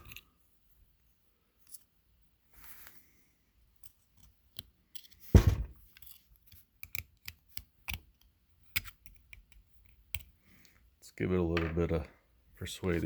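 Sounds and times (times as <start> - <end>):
heavy thump: 5.4 - 5.8.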